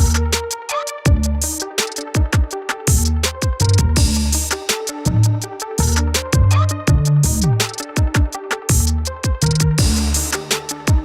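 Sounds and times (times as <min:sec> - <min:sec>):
held synth chords: 0:00.0 - 0:11.0
hi-hat ticks: 0:00.0 - 0:11.0
deep bass hits sliding down: 0:05.1 - 0:07.7.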